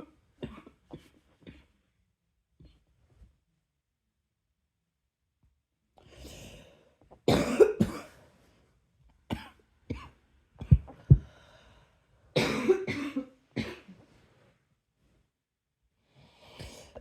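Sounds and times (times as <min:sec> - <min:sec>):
person coughing: 0:07.3 - 0:08.2, 0:12.4 - 0:13.9.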